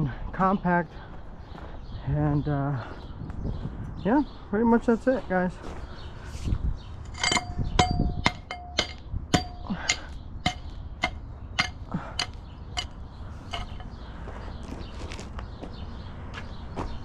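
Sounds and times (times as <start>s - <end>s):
hammer striking steel pins: 7.1s - 13.9s.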